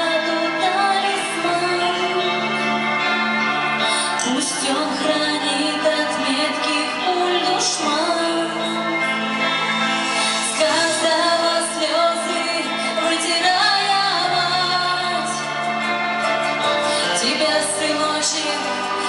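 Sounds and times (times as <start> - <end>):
instrumental accompaniment: 0.0 - 19.0
person singing: 0.0 - 19.0.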